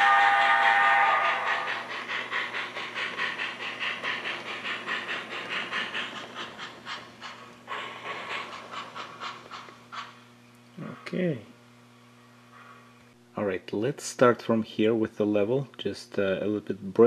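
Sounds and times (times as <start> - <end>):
model steam locomotive chuffing: 0.0 - 10.3.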